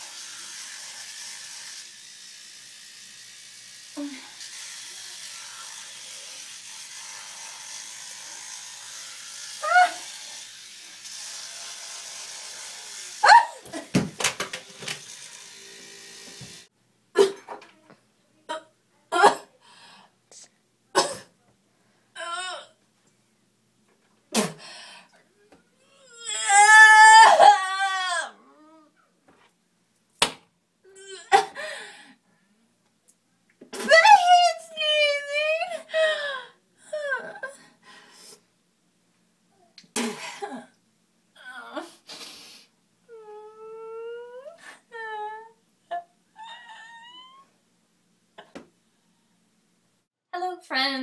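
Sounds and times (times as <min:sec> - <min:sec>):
electric toothbrush buzzing: 0:00.0 - 0:16.7
short cry rising and falling: 0:13.2 - 0:13.7.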